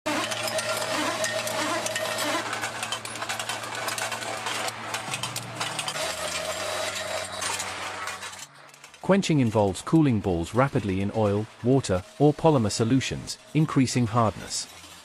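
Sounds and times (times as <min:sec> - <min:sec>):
industrial machinery humming: 0:00.1 - 0:09.1
rapid rattling and clicking: 0:00.1 - 0:10.1.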